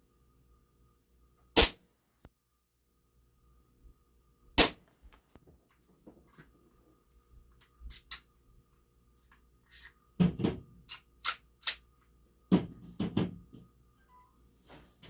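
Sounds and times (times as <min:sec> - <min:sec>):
airsoft pistol shots: 0:01.6 - 0:01.8, 0:04.6 - 0:04.8.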